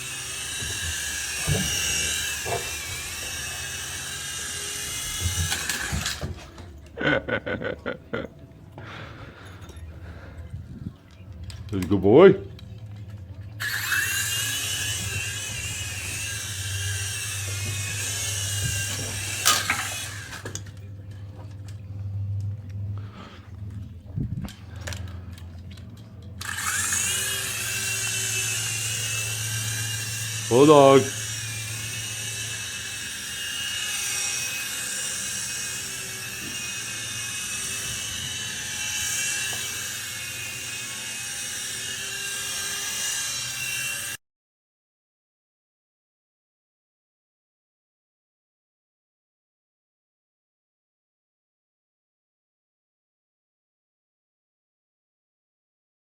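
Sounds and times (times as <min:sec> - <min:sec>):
toy helicopter motors whining: 0:00.0 - 0:07.7, 0:08.8 - 0:23.8, 0:24.4 - 0:44.2.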